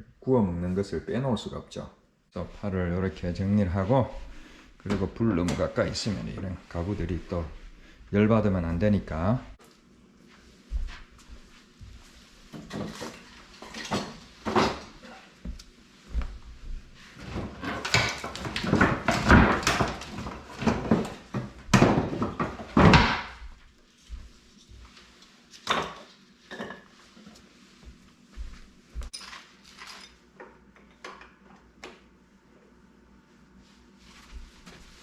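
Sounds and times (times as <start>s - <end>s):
hard objects knocking and clattering: 17.3s - 23.4s.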